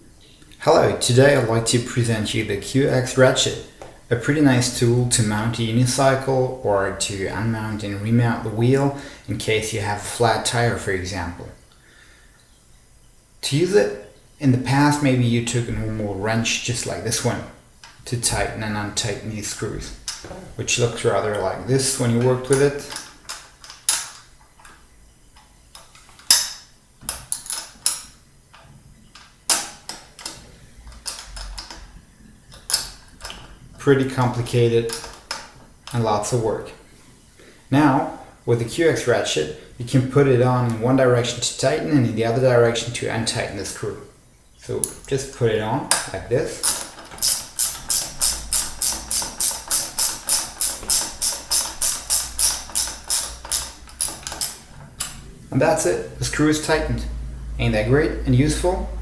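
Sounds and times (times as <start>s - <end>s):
ratchet clicking: 45.9s - 55.2s
metal wrench clinking on screws: 46.6s - 55.2s.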